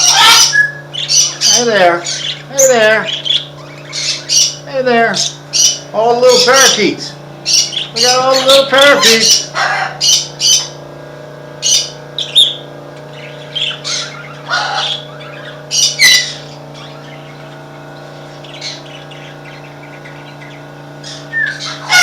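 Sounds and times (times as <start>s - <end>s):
parakeets chirping: 0.0s - 22.0s
steady low hum: 0.0s - 22.0s.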